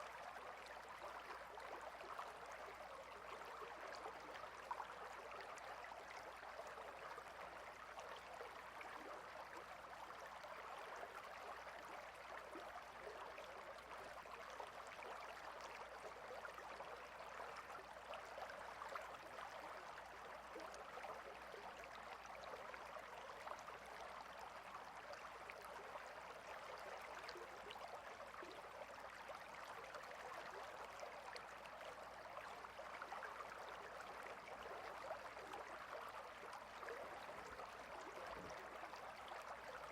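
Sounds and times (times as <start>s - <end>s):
river water flowing: 23.4s - 39.9s.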